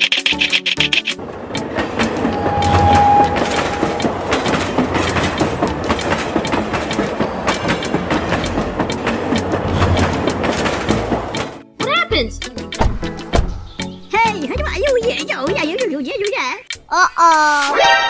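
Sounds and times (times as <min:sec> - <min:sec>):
train wheels clattering on rails: 0:00.3 - 0:11.7
whistle-like tone: 0:02.2 - 0:04.1.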